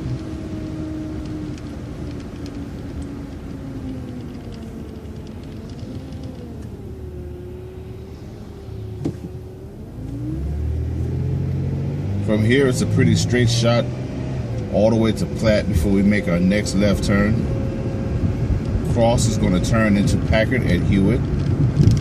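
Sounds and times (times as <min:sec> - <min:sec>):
bus motor rumbling with whine: 0:00.0 - 0:22.0.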